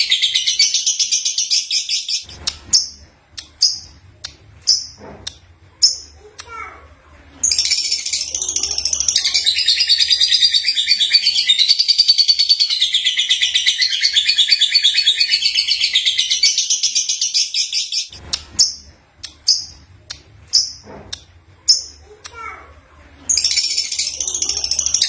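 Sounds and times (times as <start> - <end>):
bird chirps: 7.5 - 19.8.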